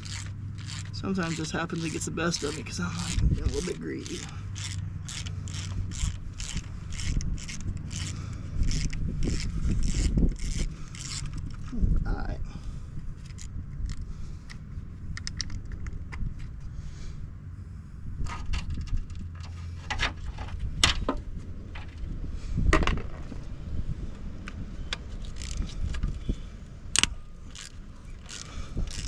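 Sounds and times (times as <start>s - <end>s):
sharp clicks: 27.0s - 29.0s.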